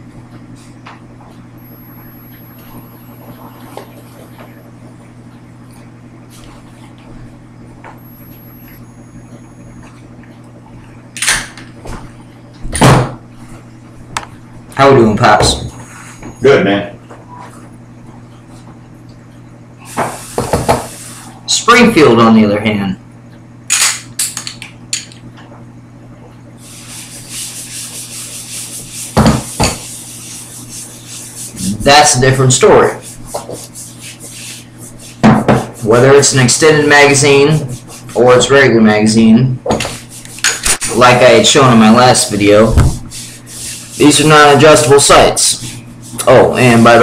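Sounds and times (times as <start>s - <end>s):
steady low hum: 0.0s - 47.0s
rubbing against microphone: 26.6s - 32.2s, 32.8s - 36.0s, 37.4s - 38.3s, 42.6s - 44.6s.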